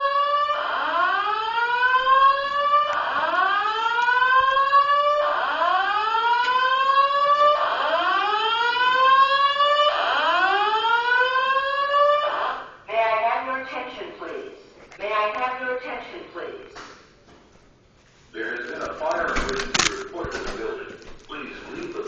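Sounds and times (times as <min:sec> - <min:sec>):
fire alarm whooping tone: 0:00.0 - 0:12.8.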